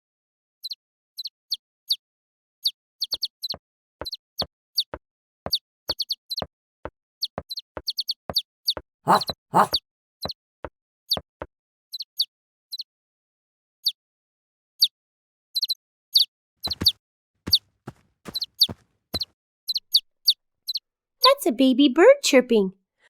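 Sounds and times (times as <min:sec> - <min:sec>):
baby bird chirping: 0:07.5 - 0:08.4, 0:09.1 - 0:09.8, 0:15.6 - 0:20.8.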